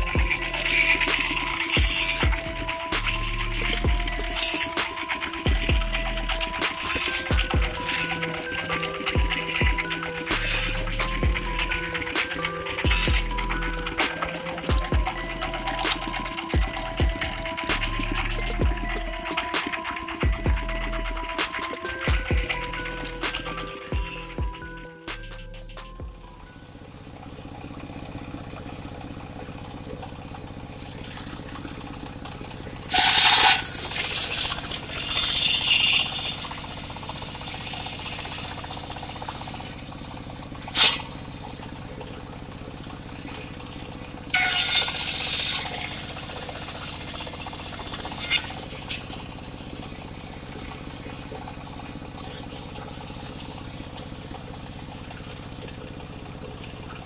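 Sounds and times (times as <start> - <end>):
circular saw cutting wood: 0.0 - 24.4, 32.9 - 39.9, 44.4 - 49.0
engine hum: 0.0 - 57.0.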